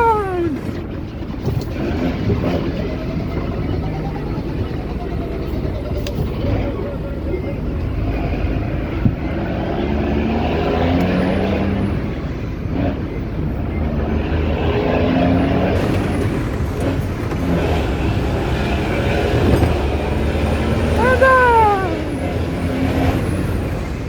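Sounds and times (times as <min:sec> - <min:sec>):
diesel truck engine running: 0:15.4 - 0:24.0.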